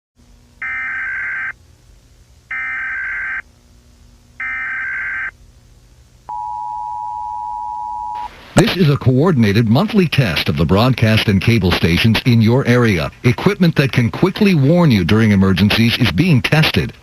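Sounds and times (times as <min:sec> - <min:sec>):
faint low hum: 0:00.2 - 0:17.0
two-tone attention signal: 0:06.3 - 0:08.3.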